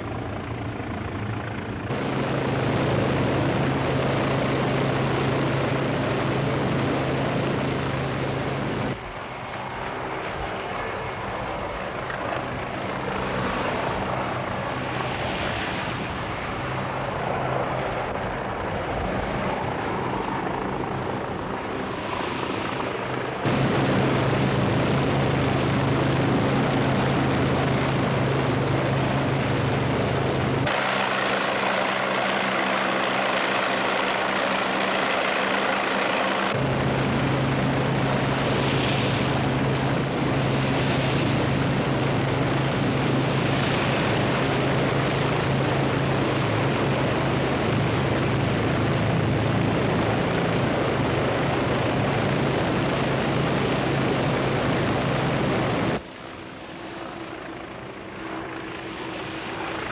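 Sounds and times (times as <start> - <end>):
helicopter engine and rotor hum: 0.0 - 59.9
rushing noise: 21.7 - 56.0.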